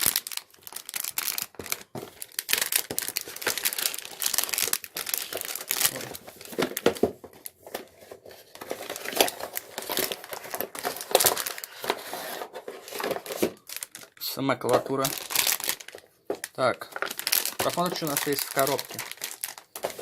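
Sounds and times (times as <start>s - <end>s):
plastic film crinkling: 0.0s - 20.0s.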